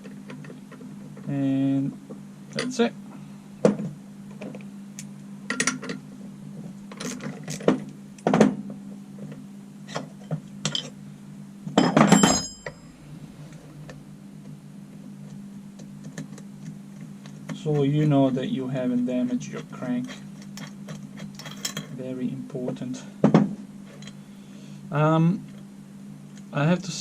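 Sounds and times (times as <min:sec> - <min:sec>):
low hum: 0:00.0 - 0:27.0
metal clatter and ring: 0:11.8 - 0:13.0, 0:19.6 - 0:22.0
metal tools clinking: 0:19.7 - 0:22.0.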